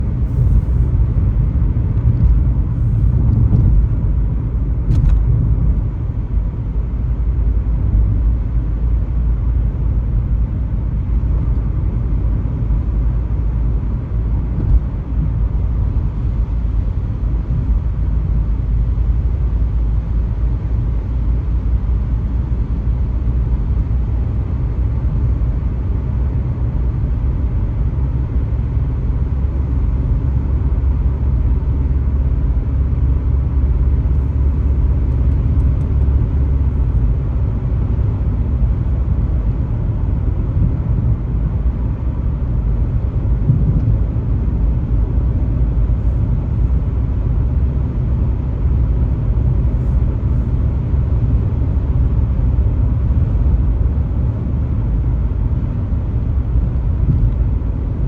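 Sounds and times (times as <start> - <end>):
car road and engine rumble: 0.0 - 58.0.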